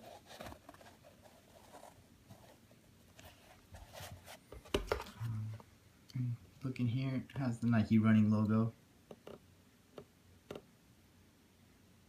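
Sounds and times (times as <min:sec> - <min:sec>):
sneaker rubbing and rustling: 0:00.0 - 0:05.2.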